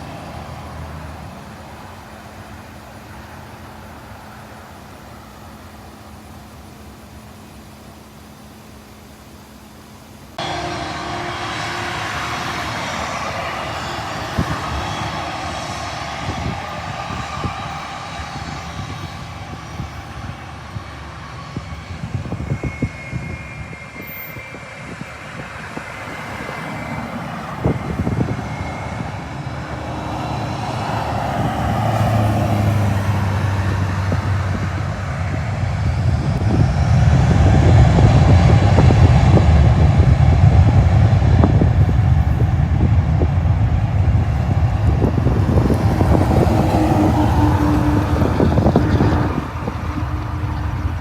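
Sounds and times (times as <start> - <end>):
jet engines running: 0.0 - 51.0
thin engine whine: 0.0 - 51.0
low rumble: 10.4 - 51.0.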